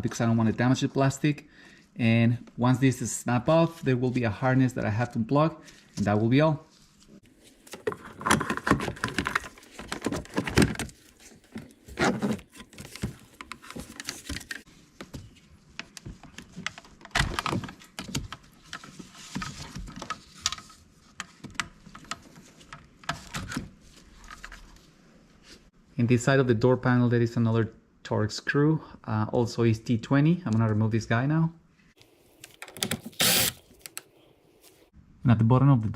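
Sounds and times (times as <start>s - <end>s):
wiring connector handled: 7.6s - 14.6s, 32.4s - 34.2s.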